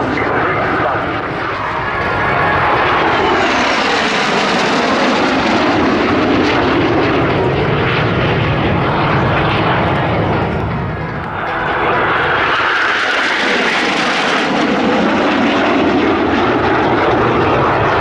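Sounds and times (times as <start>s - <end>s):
aircraft engine in flight: 0.0s - 18.0s.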